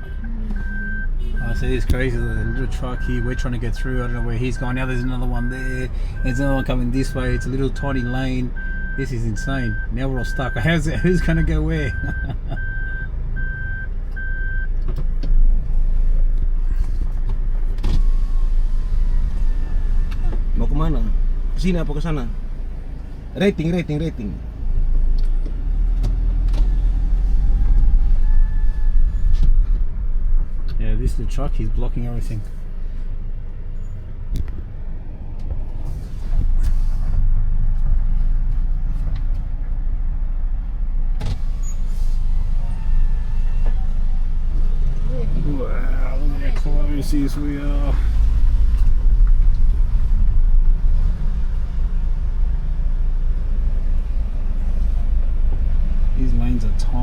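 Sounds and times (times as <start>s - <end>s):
reversing beeper beeps: 0.0s - 1.8s, 5.4s - 11.3s, 11.9s - 14.7s
traffic rumble inside car: 0.0s - 57.0s
vehicle running heard from cabin: 0.0s - 57.0s.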